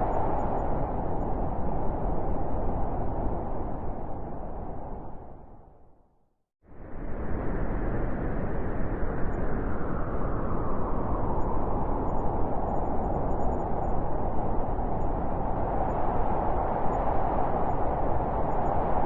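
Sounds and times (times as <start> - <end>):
wind whistling: 0.0 - 5.7, 6.9 - 19.0
howling wind: 0.0 - 6.0, 6.6 - 19.0.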